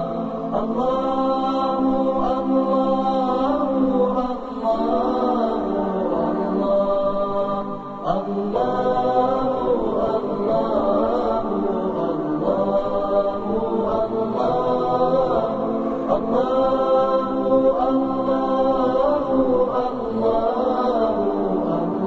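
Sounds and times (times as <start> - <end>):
a cappella sung vocal aahs: 0.0 - 22.0.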